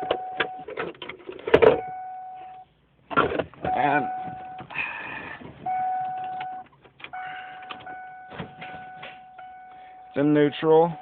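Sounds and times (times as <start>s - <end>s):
dashboard warning tone: 0.0s - 0.7s, 1.7s - 2.7s, 3.6s - 11.0s.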